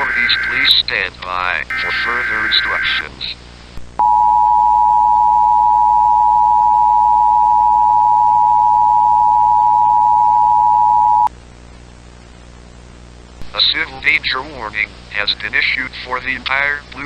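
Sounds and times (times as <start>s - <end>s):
two-tone alert tone: 0.0s - 0.7s, 1.7s - 3.0s.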